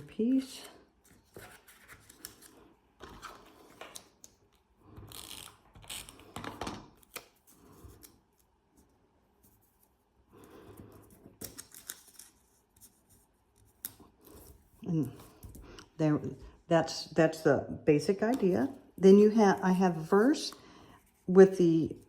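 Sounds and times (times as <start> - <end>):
paper rustling: 0.0 - 4.2, 11.0 - 15.6.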